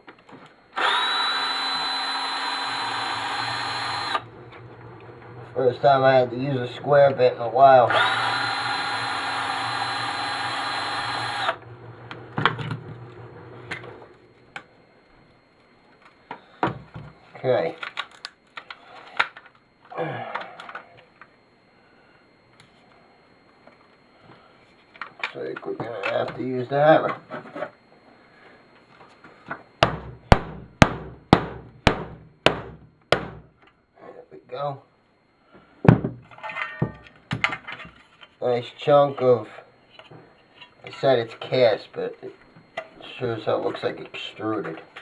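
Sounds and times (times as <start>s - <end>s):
cordless drill running: 0.7s - 4.3s, 7.9s - 11.6s.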